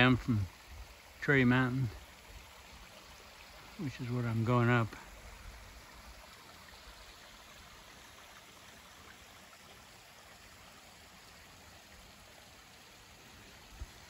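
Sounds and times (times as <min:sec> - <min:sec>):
stream flowing: 0:00.0 - 0:14.0.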